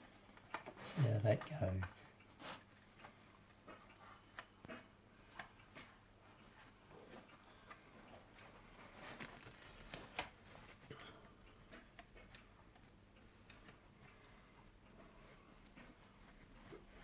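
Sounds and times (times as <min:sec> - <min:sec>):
faint clicks of handling: 0:07.2 - 0:15.0.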